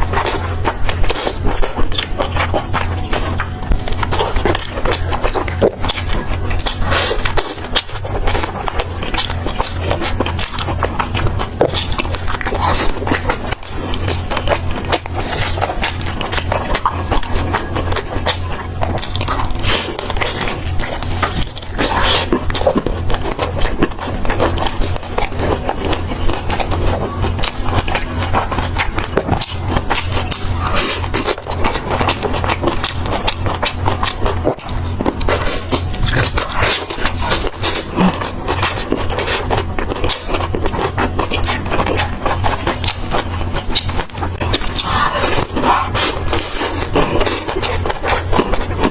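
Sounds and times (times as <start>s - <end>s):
biting and chewing food: 0.0s - 48.9s
steady low hum: 0.0s - 48.9s.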